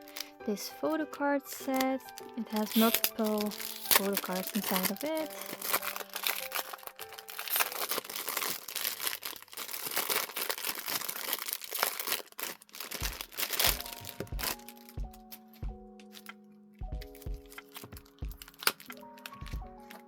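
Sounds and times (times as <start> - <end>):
packaging rustling and crackling: 0.0 - 20.0
background music with low beat: 13.0 - 20.0.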